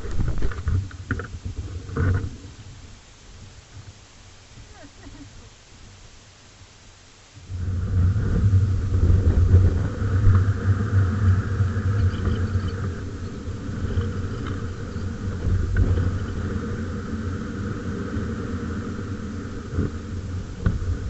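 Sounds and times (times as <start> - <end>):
motorcycle engine rumbling: 7.4 - 21.0.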